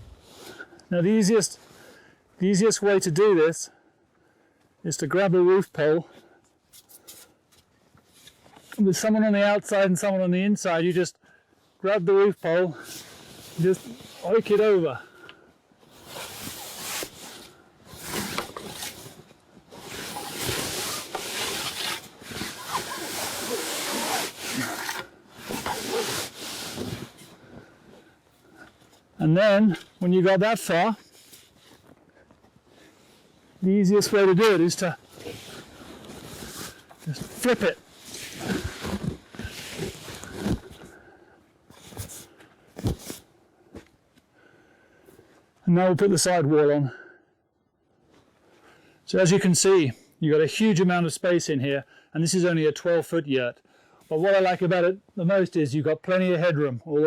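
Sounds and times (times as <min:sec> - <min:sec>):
canvas swishing and rustling: 0:15.8 - 0:28.2, 0:34.1 - 0:40.8.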